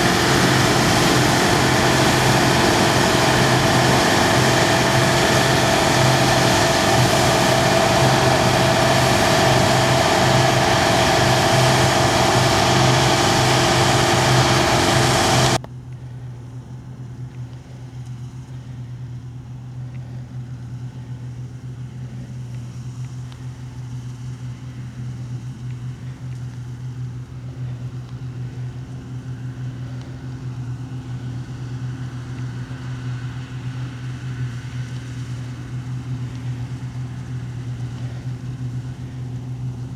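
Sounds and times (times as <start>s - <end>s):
loud farm machine engine: 0.0s - 15.7s
quiet steady engine hum: 0.0s - 39.9s.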